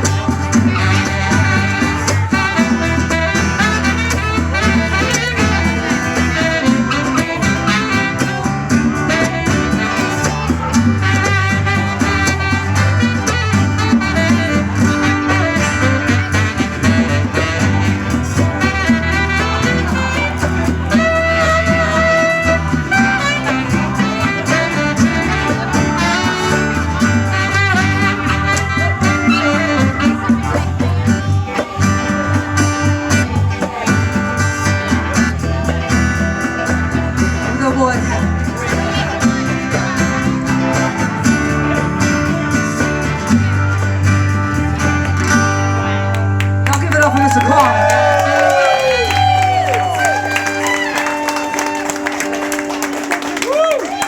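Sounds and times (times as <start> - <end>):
bass notes: 0.0 - 54.0
electric guitar: 0.0 - 54.0
live band playing instrumental: 0.0 - 54.0.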